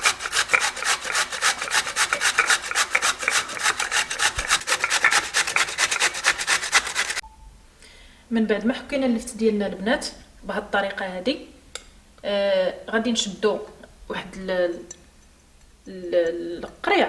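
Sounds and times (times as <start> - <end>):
turnip scraped on a hand grater: 0.0 - 7.2.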